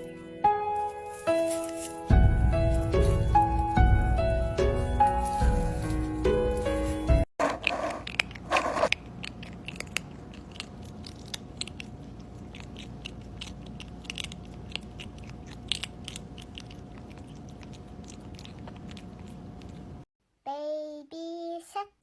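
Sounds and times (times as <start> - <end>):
pet chewing crunchy food: 7.4 - 20.0.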